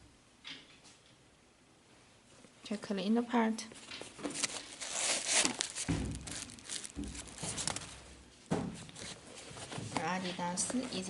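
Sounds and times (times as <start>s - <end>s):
sneaker crinkling and rustling: 3.8s - 11.0s
low rumbling handling noise: 4.4s - 10.8s.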